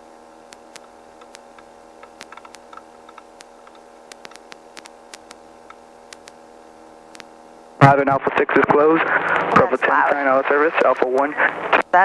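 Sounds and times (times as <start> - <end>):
intercom electrical hum and hiss: 0.0 - 12.0
irregular clicks and ticks: 0.5 - 6.4.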